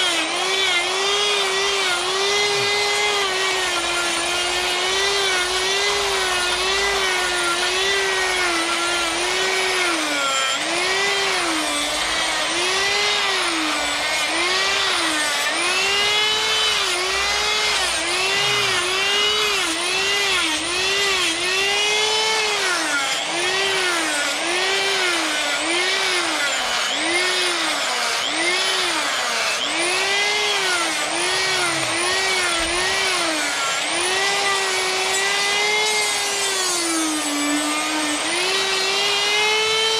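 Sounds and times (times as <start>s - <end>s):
power carving tool cutting wood: 0.0s - 39.9s.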